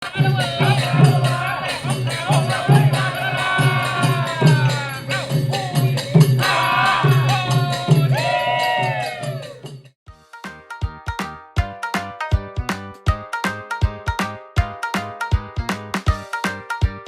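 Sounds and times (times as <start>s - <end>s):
shaker percussion: 0.0s - 10.0s
background music with steady beat: 0.0s - 17.0s.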